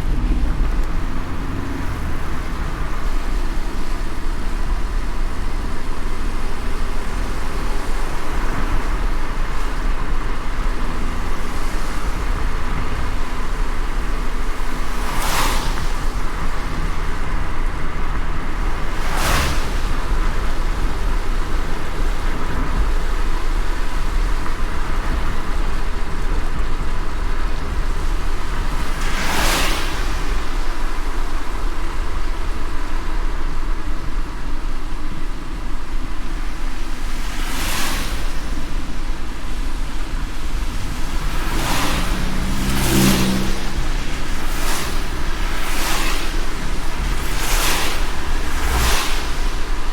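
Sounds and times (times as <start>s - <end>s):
hiss of rain and spray: 0.0s - 49.9s
low road rumble: 0.0s - 49.9s
whooshing swish: 40.2s - 49.8s.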